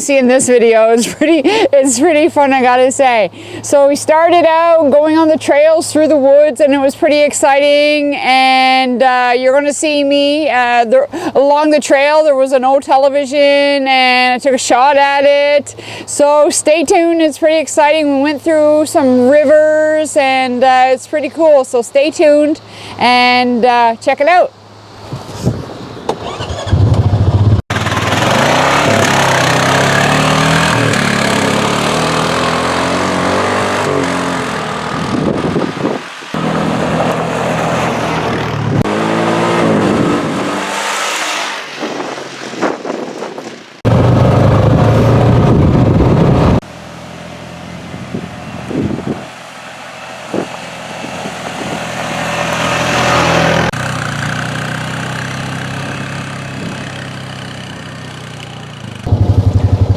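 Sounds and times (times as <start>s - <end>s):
engine running and revving: 26.2s - 42.7s, 43.8s - 59.9s.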